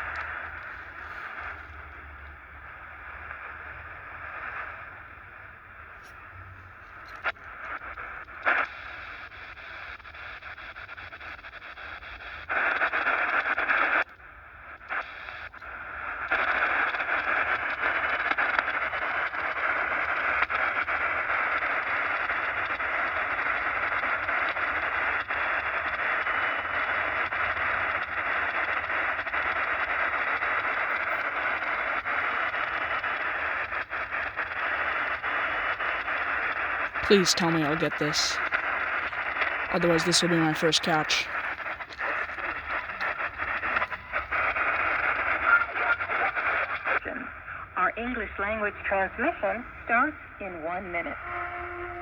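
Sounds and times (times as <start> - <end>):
shortwave radio static: 0.0 - 9.8, 30.6 - 47.2.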